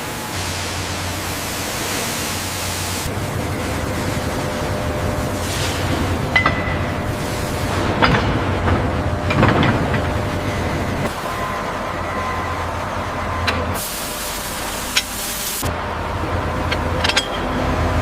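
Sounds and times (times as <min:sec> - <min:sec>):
machine running: 0:00.0 - 0:18.0
hiss: 0:05.3 - 0:06.2, 0:13.8 - 0:15.7
metallic clanks: 0:16.7 - 0:17.6.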